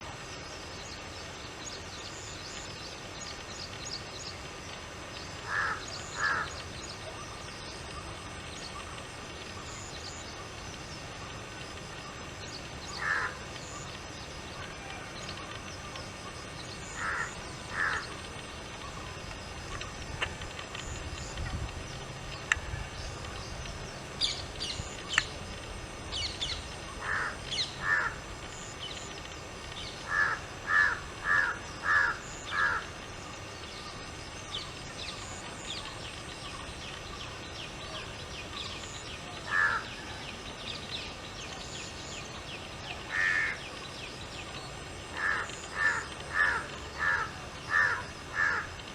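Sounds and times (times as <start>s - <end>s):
harsh bird calls: 5.4s - 7.4s, 12.7s - 13.9s, 16.7s - 19.0s, 26.2s - 28.3s, 29.9s - 33.2s, 37.0s - 41.7s, 45.1s - 48.8s.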